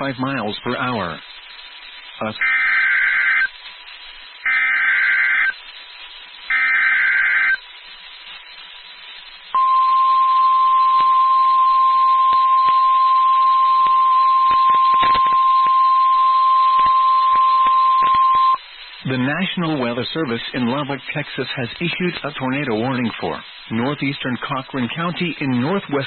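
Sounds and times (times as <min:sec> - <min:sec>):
radio static clicks: 0:00.0 - 0:09.6, 0:12.2 - 0:13.0, 0:13.6 - 0:26.0
steady warning alarm tone: 0:09.6 - 0:18.6.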